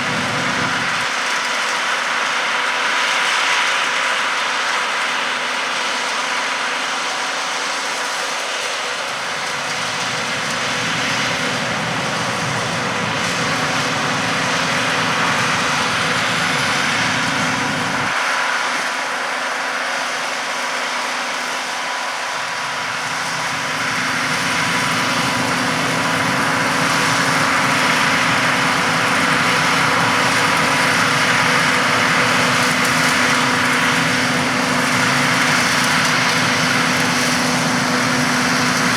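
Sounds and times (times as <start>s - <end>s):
low engine rumble: 9.1s - 18.2s.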